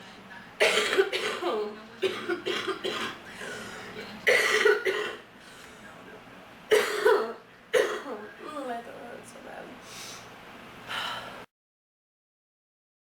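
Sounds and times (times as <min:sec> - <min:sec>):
person coughing: 0:00.6 - 0:03.2, 0:04.2 - 0:05.3, 0:06.7 - 0:08.2.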